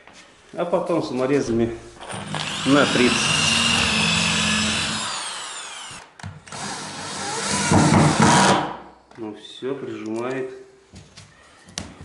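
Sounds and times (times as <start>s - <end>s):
drill-driver motor whine: 2.0s - 7.7s.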